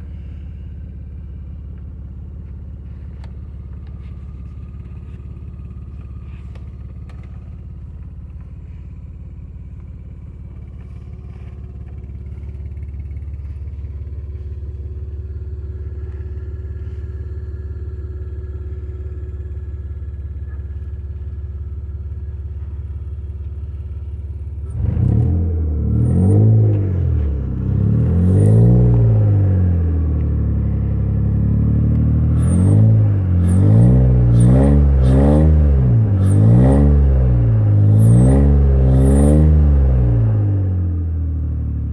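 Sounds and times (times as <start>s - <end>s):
car engine idling roughly: 0.0s - 24.8s, 25.8s - 38.2s
car engine revving: 24.6s - 41.9s.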